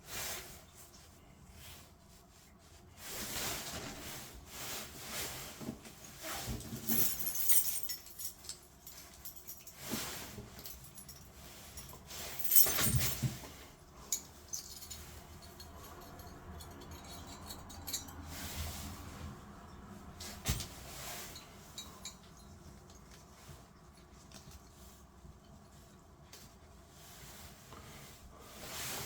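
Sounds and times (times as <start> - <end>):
metal tools clattering: 6.5 - 18.9, 21.2 - 22.6
metal parts clinking and rattling: 6.6 - 9.8, 10.5 - 13.4, 14.1 - 18.6.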